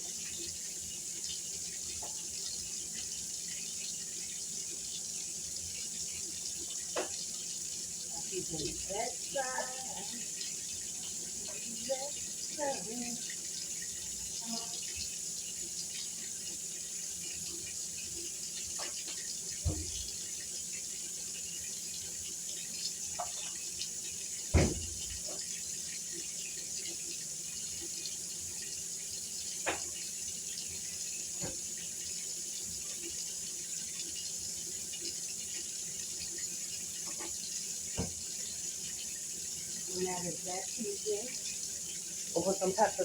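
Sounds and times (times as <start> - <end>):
light kitchen knocks and clicks: 6.7 - 7.4, 18.6 - 20.3, 23.1 - 23.7, 24.5 - 25.6, 29.5 - 30.1, 31.3 - 31.8, 37.0 - 38.3.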